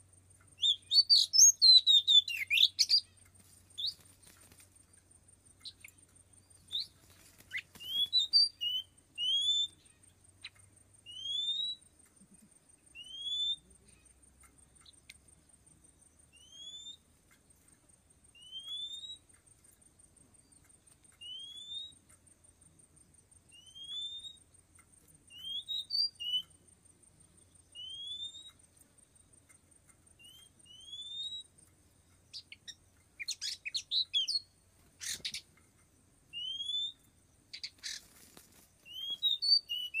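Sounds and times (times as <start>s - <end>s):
bird rising whistle call: 36.4s - 37.0s.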